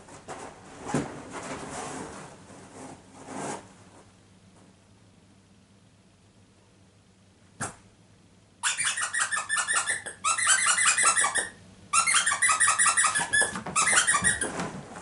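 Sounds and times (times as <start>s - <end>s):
rubber squeaker squeaking: 8.6s - 14.6s.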